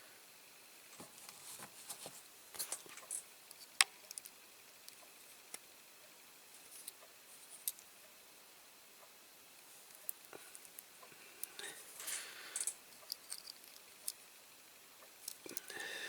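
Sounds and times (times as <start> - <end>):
pliers clicking and scraping: 11.4 - 14.2.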